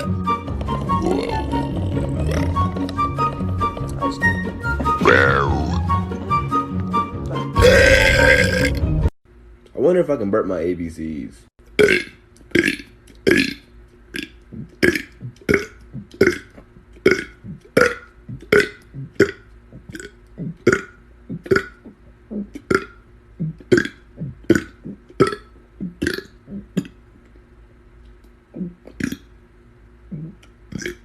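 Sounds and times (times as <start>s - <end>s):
man burping: 0.9s - 2.8s, 7.6s - 8.8s, 11.8s - 13.6s, 14.2s - 26.9s, 30.1s - 31.0s.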